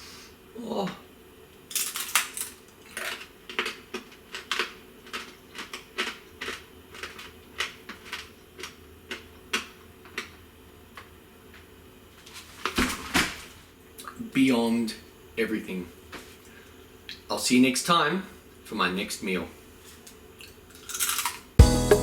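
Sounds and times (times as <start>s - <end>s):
bacon crunching: 1.7s - 10.3s, 20.7s - 21.4s.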